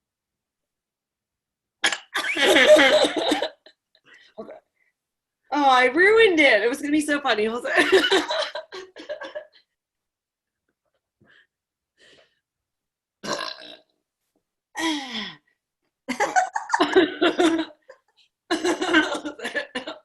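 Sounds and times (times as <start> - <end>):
woman burping: 13.2 - 13.9.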